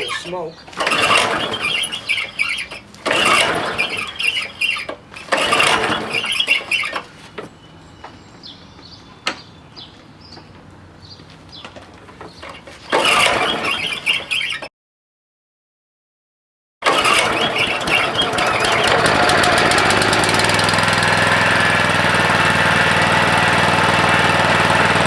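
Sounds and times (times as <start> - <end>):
lawnmower recoil starter pulls: 0.0 - 7.2, 12.4 - 14.7, 16.8 - 25.0.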